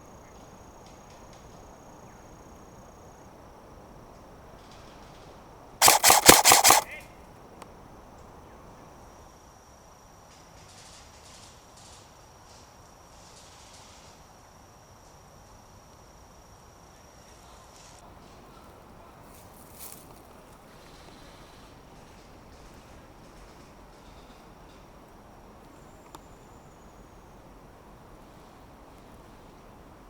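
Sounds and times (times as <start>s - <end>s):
airsoft gun rapid burst: 5.8s - 7.0s.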